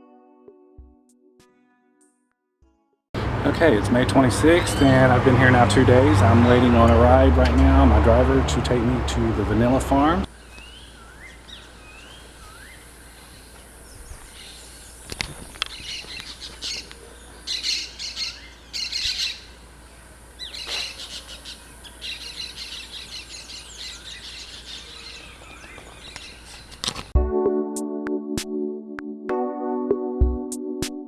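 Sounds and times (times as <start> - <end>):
harsh chattering bird calls: 10.4 - 19.5, 20.4 - 26.7.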